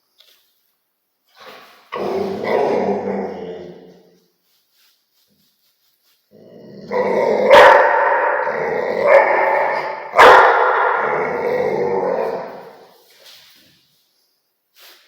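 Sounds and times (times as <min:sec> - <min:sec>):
dog barking and growling: 0:01.4 - 0:04.1, 0:06.3 - 0:12.9.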